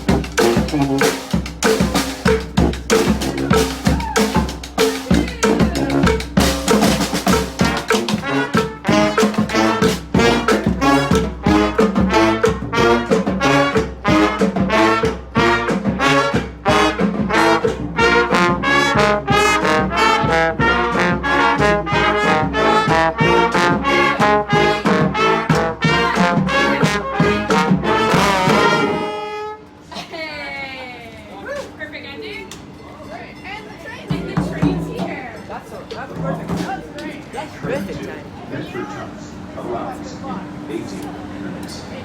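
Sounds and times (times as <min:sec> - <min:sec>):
brass street band playing: 0:00.0 - 0:29.8, 0:33.9 - 0:35.4.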